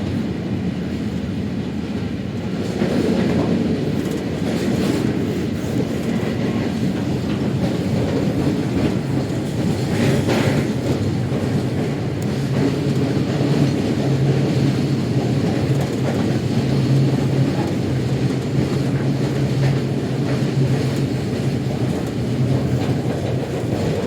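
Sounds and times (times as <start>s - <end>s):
train rumbling: 0.0s - 24.0s.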